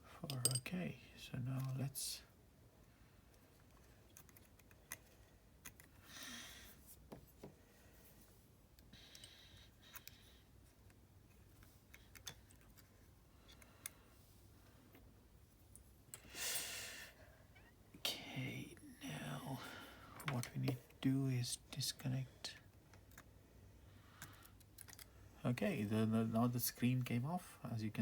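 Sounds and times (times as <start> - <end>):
small metal tools clicking: 0.3 - 0.7.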